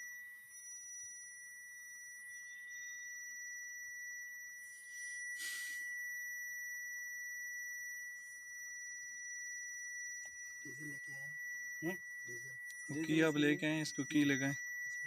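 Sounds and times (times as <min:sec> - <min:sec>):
short hiss: 0:05.4 - 0:05.8
high-pitched electronic tone: 0:10.6 - 0:15.0.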